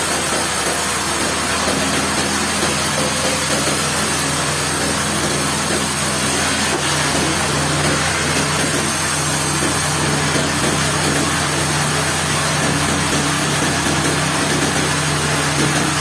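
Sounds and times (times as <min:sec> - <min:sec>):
sawmill machinery running: 0:00.0 - 0:16.0.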